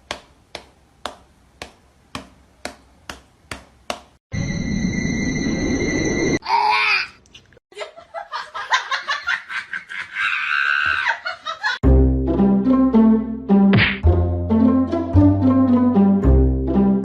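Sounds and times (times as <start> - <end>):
steady high tone: 4.3 - 6.4
hearty human laughter: 7.7 - 11.8
music: 11.8 - 17.0.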